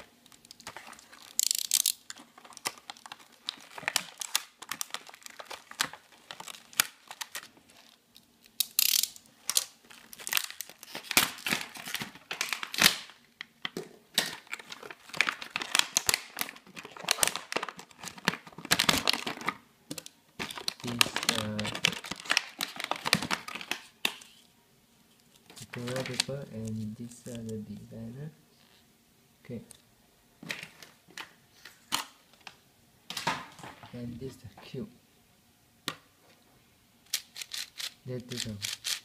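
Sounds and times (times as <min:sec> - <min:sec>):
packaging clicks: 0:00.0 - 0:24.4, 0:25.5 - 0:26.8, 0:37.1 - 0:39.0
wrapping crinkling and tearing: 0:00.0 - 0:24.4, 0:25.1 - 0:27.5, 0:37.1 - 0:39.0.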